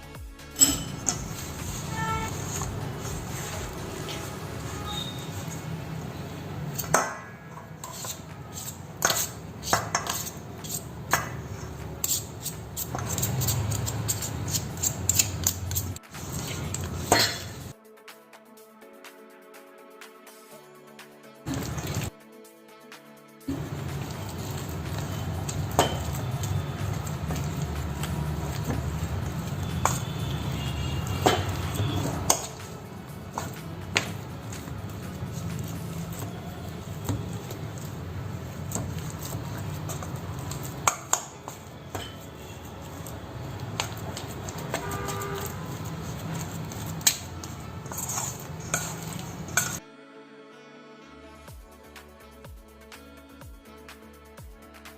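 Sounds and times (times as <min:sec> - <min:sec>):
utensils and dishes clinking: 0:00.5 - 0:17.7, 0:21.5 - 0:22.1, 0:23.5 - 0:49.8
utensils knocking against dishes: 0:00.6 - 0:01.4, 0:16.6 - 0:17.7, 0:23.5 - 0:32.7, 0:38.7 - 0:42.4.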